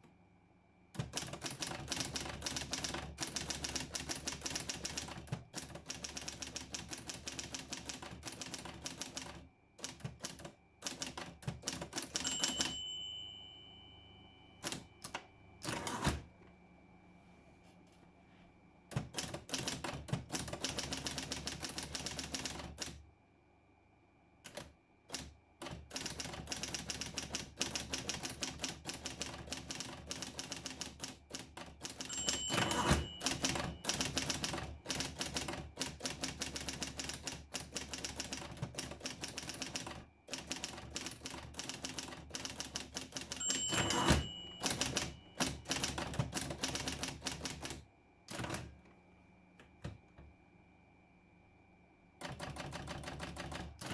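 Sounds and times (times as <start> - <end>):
typewriter motor hum: 1.0 - 12.3, 18.9 - 23.0, 24.4 - 48.7, 52.2 - 53.9
typewriter keystrokes: 1.0 - 12.8, 14.6 - 16.2, 18.9 - 23.0, 24.5 - 48.7, 52.2 - 53.9
typewriter bell ding: 11.0 - 16.1, 31.9 - 35.4, 40.3 - 47.0.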